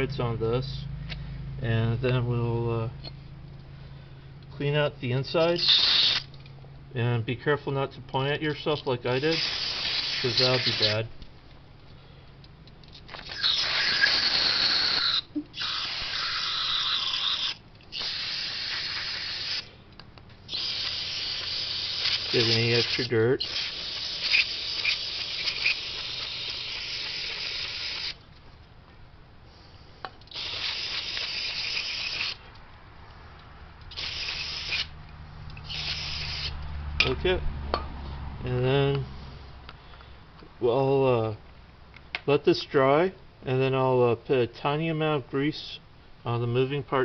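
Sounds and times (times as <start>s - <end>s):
aerosol can hissing: 5.6s - 6.3s, 9.2s - 11.0s, 13.2s - 19.7s, 20.5s - 28.2s, 30.3s - 32.4s, 33.9s - 35.0s, 35.6s - 36.6s.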